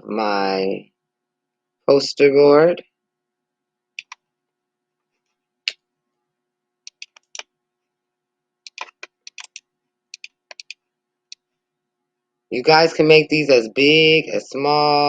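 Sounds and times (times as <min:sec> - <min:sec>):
keyboard and mouse clicking: 0:04.0 - 0:04.2, 0:06.9 - 0:07.5, 0:08.6 - 0:11.4.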